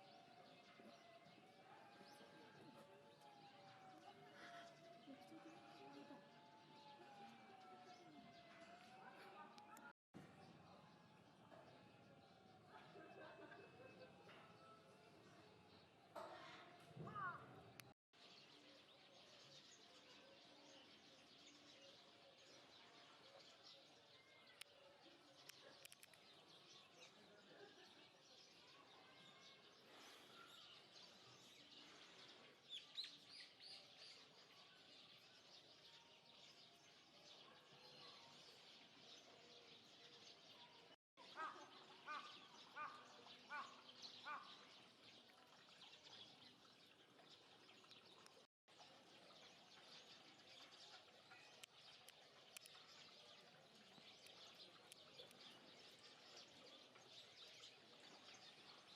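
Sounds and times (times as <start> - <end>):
birds chirping: 37.4 - 58.9.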